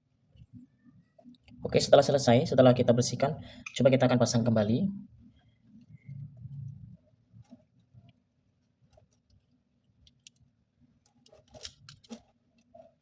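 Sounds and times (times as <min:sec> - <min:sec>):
plastic parts clicking: 0:10.0 - 0:12.9.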